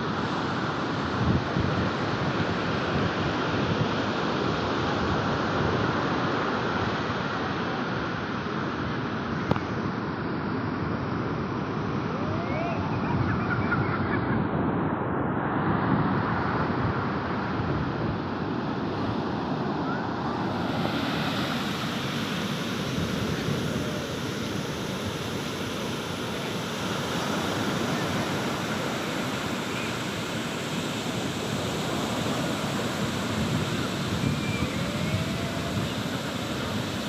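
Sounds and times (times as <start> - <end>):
steady rushing noise: 12.5 - 37.0
faint short squealing glides: 34.1 - 35.6.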